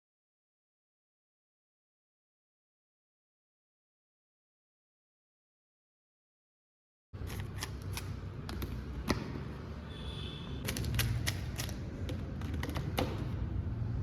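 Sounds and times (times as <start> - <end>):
plastic cubes clicking: 10.6 - 13.2.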